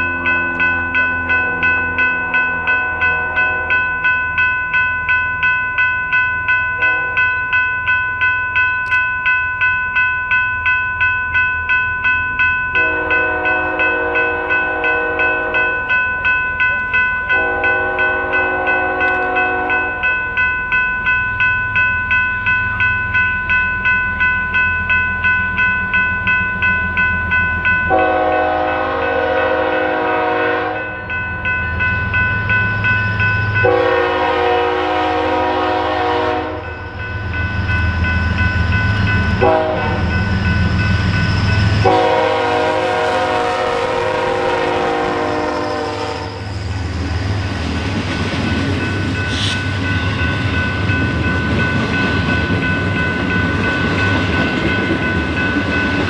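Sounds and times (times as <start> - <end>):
bell ringing: 0.0 - 29.6, 30.8 - 35.0, 35.9 - 56.0
train cars rolling past: 0.0 - 56.0
train air horn: 2.8 - 3.8, 12.8 - 15.8, 17.3 - 19.9, 27.9 - 30.9, 33.6 - 36.7, 39.4 - 40.1, 41.8 - 46.5
locomotive engine rumbling: 25.8 - 56.0.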